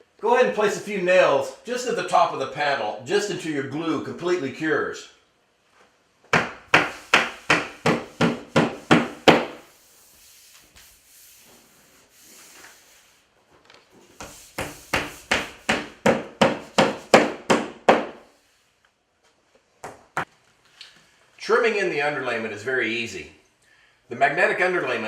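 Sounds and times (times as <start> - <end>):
hammer driving nails: 6.3 - 9.6, 14.6 - 18.2.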